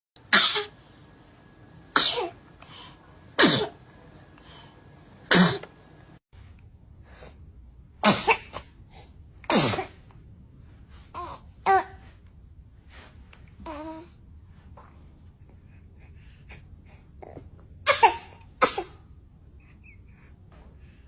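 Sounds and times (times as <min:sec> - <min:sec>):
babies sneezing: 0:05.3 - 0:05.7.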